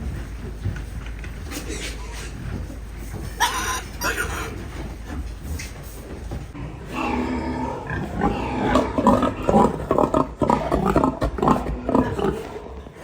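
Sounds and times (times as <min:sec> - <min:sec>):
farm animal calls: 0:03.4 - 0:04.6.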